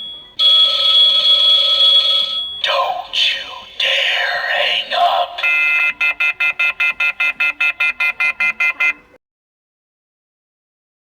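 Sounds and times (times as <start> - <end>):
steady high beep: 5.4 - 9.0.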